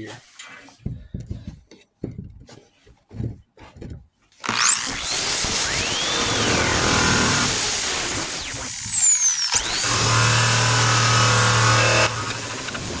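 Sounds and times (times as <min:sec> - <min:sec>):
power sander whining: 0:04.4 - 0:13.0.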